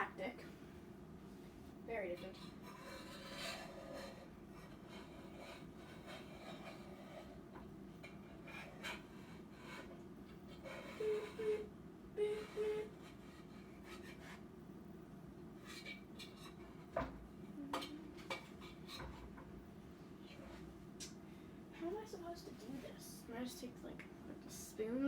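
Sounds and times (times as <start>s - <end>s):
low steady hum: 0.0s - 25.0s
cake pan and utensils scraping: 1.9s - 9.9s.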